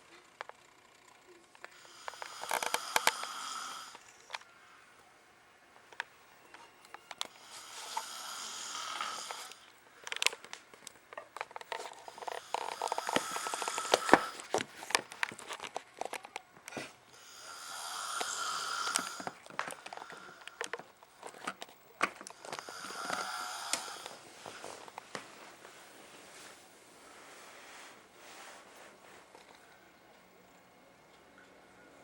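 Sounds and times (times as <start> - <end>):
person snoring: 1.7 - 4.1, 7.3 - 9.7, 12.0 - 14.5, 17.2 - 20.6, 22.3 - 24.6.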